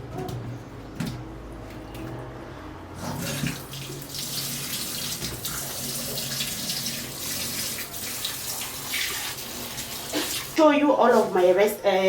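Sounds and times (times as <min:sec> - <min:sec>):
tap water running into sink: 0:03.0 - 0:10.6.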